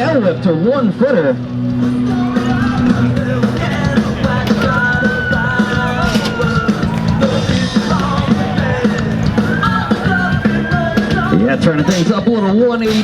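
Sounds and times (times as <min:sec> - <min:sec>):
rock music with singer: 0:00.0 - 0:13.0
steady drum beat: 0:02.1 - 0:12.2.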